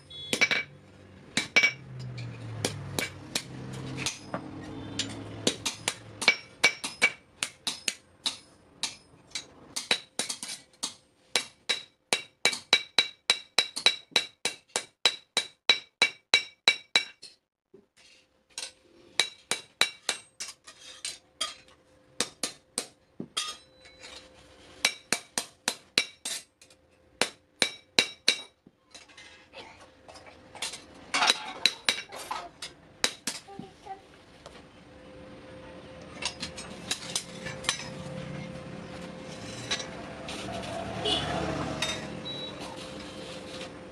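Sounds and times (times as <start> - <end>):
hammer striking steel on anvil: 0.0 - 0.7, 1.4 - 17.4, 18.6 - 24.1, 24.8 - 28.6, 30.6 - 33.4, 36.2 - 38.0.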